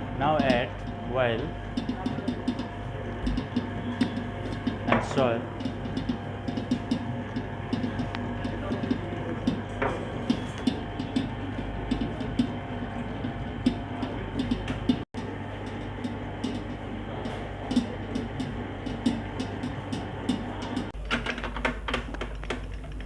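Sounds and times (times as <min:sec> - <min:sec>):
electric dough mixer humming: 0:00.0 - 0:23.0
dough hook knocking in bowl: 0:03.2 - 0:03.6.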